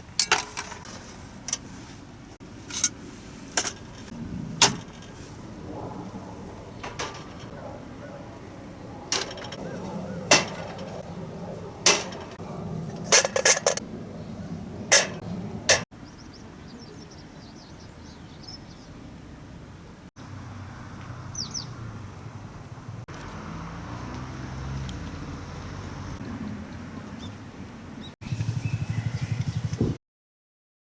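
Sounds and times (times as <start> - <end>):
small birds chirping: 15.2 - 19.2, 21.0 - 21.9, 27.0 - 30.0.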